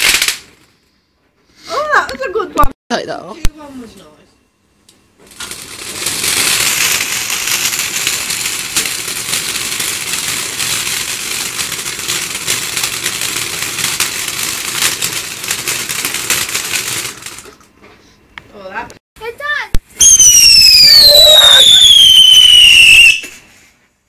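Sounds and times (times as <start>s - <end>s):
firework hissing and crackling: 0.0s - 0.8s, 5.2s - 17.6s, 19.8s - 23.8s.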